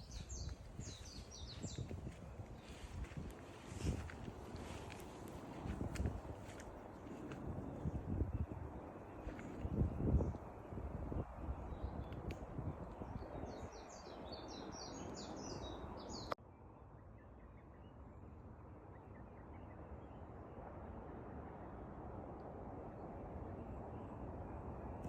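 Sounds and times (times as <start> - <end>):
distant bird chirps: 0.0 - 3.2
songbird chirping: 0.0 - 10.5, 11.2 - 16.4
wind noise: 0.0 - 15.1
click: 12.0 - 12.4.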